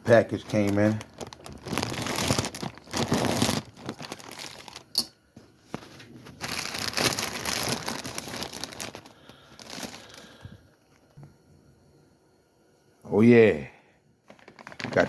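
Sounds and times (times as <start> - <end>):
packaging crinkling and tearing: 0.1 - 5.0, 5.7 - 11.2, 14.3 - 15.0.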